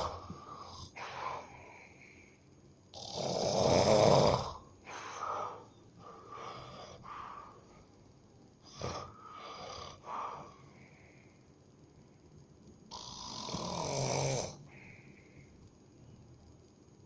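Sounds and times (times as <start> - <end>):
person snoring heavily: 0.0 - 1.5, 2.9 - 7.5, 8.7 - 10.6, 12.9 - 14.7
soft breathing: 0.0 - 2.6, 4.8 - 12.4, 14.6 - 15.9.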